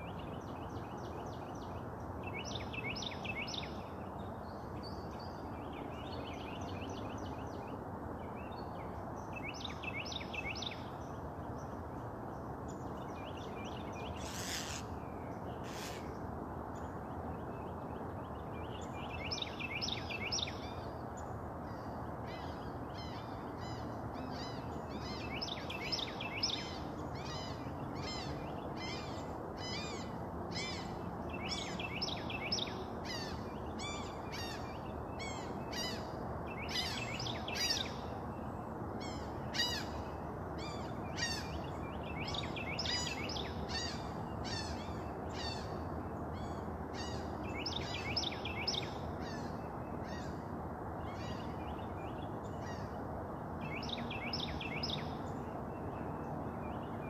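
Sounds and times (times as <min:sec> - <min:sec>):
low background noise: 0:00.0 - 0:57.0
songbirds chirping and trilling: 0:00.0 - 0:57.0.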